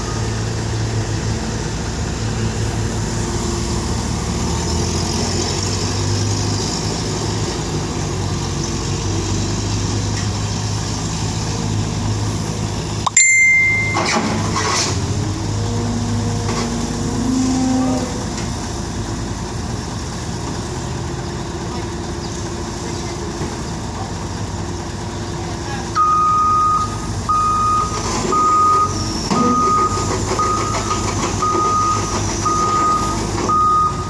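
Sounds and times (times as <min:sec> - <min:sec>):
heavy machinery engine running: 0:00.0 - 0:34.0
short high beep: 0:13.1 - 0:14.2.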